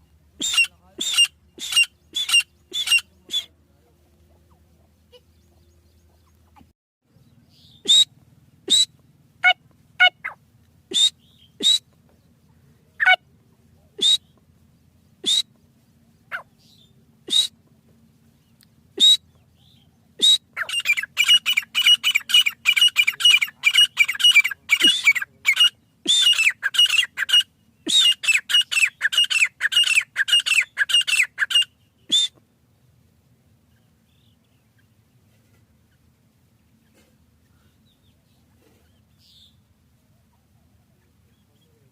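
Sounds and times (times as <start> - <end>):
partridge calling: 0.0 - 3.6, 7.5 - 12.3, 13.0 - 13.2, 14.0 - 14.4, 15.1 - 15.6, 16.2 - 17.6, 18.5 - 32.4.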